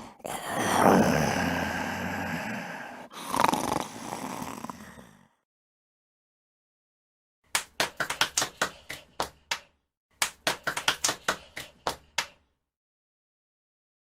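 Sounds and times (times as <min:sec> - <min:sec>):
hands clapping: 0:07.5 - 0:12.5.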